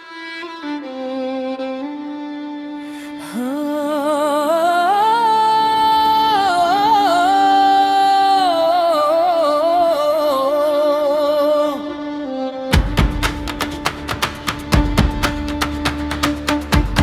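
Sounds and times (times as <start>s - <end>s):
slow wordless melody with slides: 4.1s - 17.0s.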